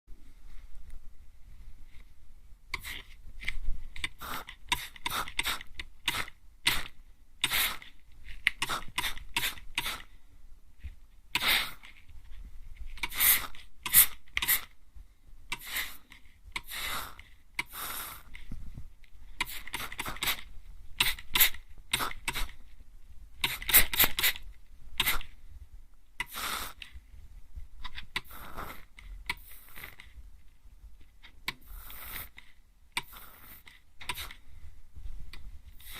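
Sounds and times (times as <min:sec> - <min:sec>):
mist sprayer hissing puffs: 0:04.2 - 0:06.8, 0:08.6 - 0:10.1, 0:13.1 - 0:14.6, 0:15.5 - 0:18.4, 0:26.3 - 0:26.9, 0:33.0 - 0:34.4.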